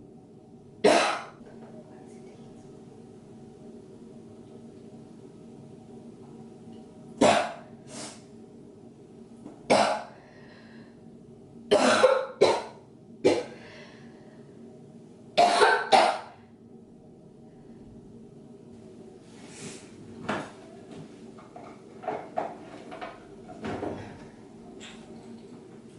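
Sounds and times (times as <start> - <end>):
woman coughing hard: 0.8 - 1.4, 9.7 - 10.1, 11.7 - 13.6, 15.4 - 16.3.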